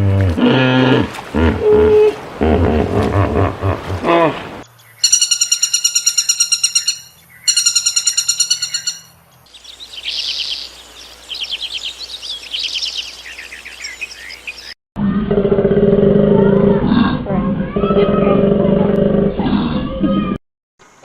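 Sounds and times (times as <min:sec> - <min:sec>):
bird repeating high notes: 0:05.0 - 0:09.1
bird high trills: 0:05.0 - 0:14.8.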